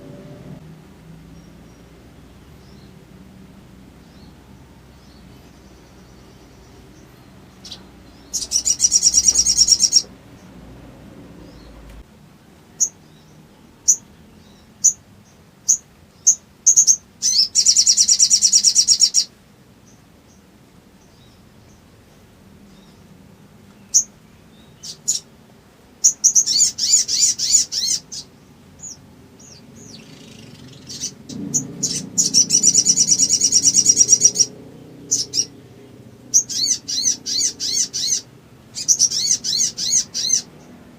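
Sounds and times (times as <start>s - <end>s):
sharp bird chirps: 5.0s - 10.5s, 26.1s - 34.5s, 36.3s - 40.5s
bird rattling trills: 7.6s - 10.1s, 29.8s - 34.5s.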